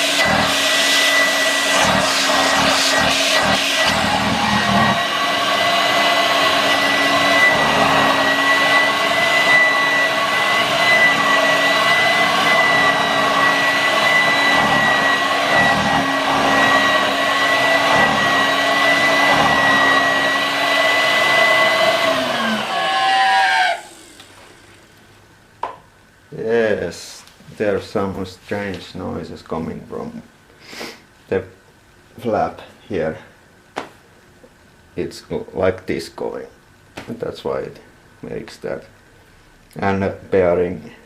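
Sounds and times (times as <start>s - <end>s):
motor spinning down: 0.0s - 24.8s
vacuum cleaner motor whining: 0.0s - 25.0s.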